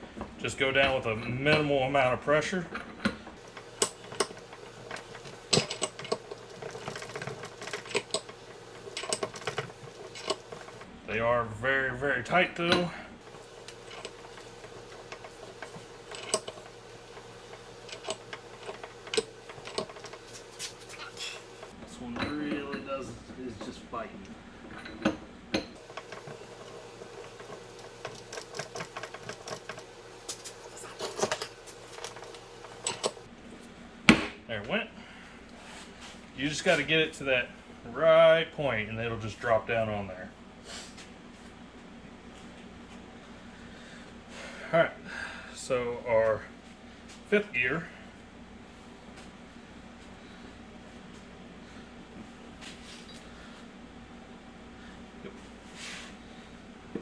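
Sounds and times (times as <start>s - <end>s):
metal gear clicking and rattling: 3.4s - 10.9s, 13.2s - 21.7s, 25.8s - 33.3s.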